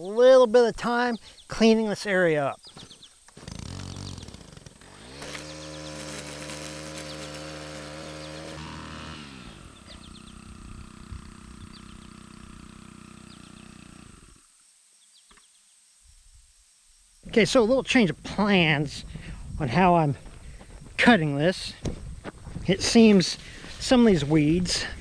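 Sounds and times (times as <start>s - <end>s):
string trimmer engine revving: 3.4s - 14.5s, 22.6s - 25.0s.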